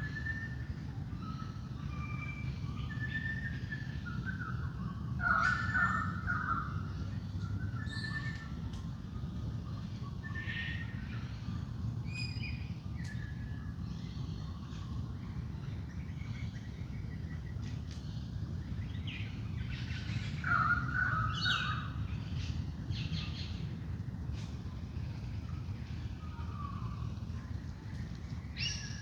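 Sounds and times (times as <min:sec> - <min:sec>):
steady low rumble: 0:00.0 - 0:29.0
birds chirping and calling: 0:01.3 - 0:08.6, 0:16.2 - 0:23.8.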